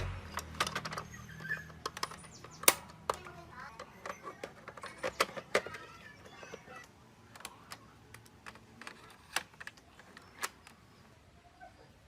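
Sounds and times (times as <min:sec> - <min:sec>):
sharp clicks and taps: 0:01.7 - 0:10.8.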